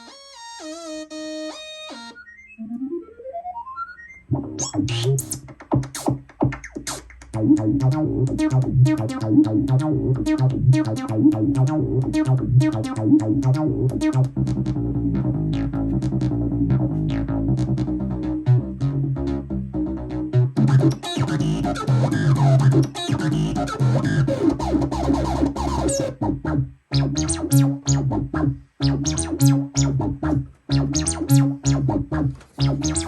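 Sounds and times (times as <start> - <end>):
synthesizer music: 0.0 - 33.0
deep bass line: 7.3 - 33.0.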